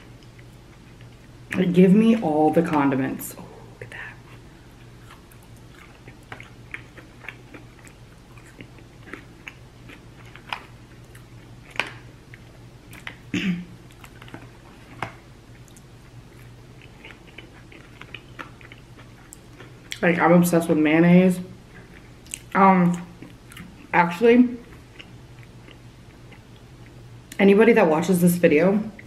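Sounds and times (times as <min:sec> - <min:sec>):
wet chewing and biting: 0:04.8 - 0:13.2, 0:13.9 - 0:20.0, 0:24.7 - 0:26.6.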